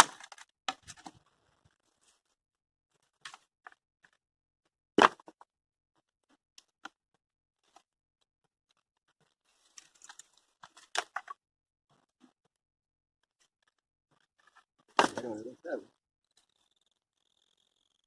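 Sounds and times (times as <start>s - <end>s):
wood and debris breaking apart: 0.0s - 1.2s.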